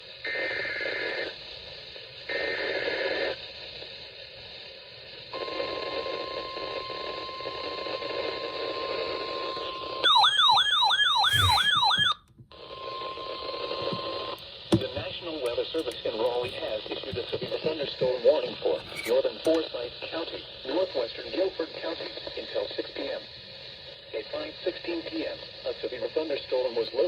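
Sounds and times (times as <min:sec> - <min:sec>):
warbling siren-like alarm: 0:10.0 - 0:12.2
steady warning alarm tone: 0:10.0 - 0:12.3
radio static: 0:11.2 - 0:12.1, 0:14.7 - 0:19.7
digital data screeches: 0:11.2 - 0:12.2.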